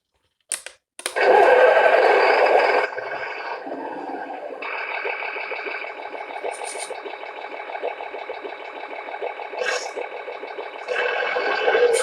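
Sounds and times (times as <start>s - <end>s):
toy diesel truck engine sound: 1.2s - 12.0s.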